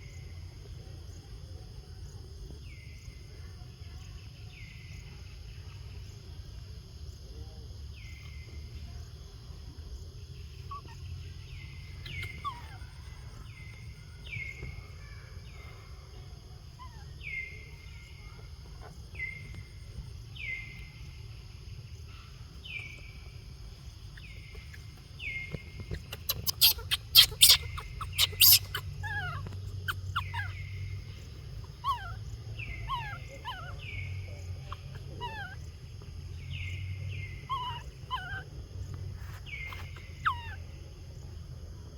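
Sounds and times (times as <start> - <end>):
baby monkey whimper calls: 10.6 - 11.1, 12.0 - 13.1, 25.8 - 30.8, 31.7 - 34.1, 34.7 - 35.6, 37.4 - 38.5, 39.5 - 40.6
monkey shrill squeals: 26.1 - 30.6.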